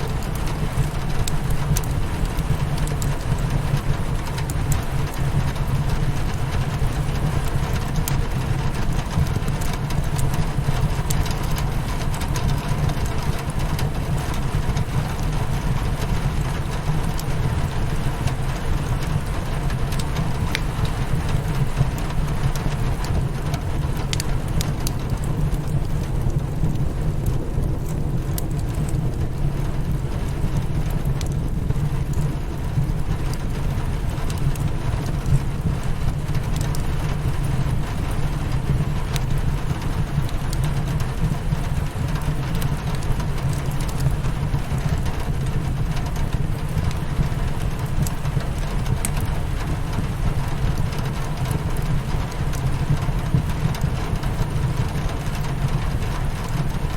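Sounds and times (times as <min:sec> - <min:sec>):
rain hitting a window: 0:00.0 - 0:56.9
wood fire crackling: 0:00.0 - 0:56.9.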